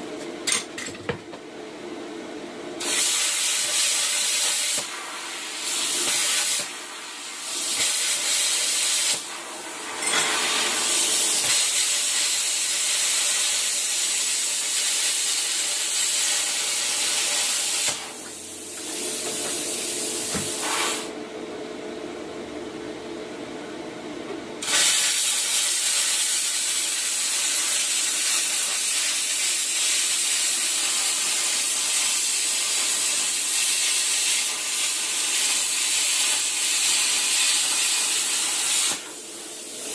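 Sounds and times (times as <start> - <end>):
plasma cutter hissing: 2.8 - 21.1, 24.6 - 39.9.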